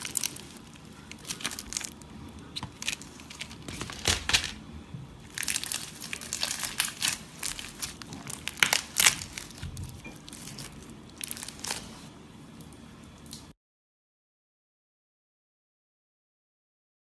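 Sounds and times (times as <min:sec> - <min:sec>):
slime crackling and clicking: 0:05.3 - 0:11.9.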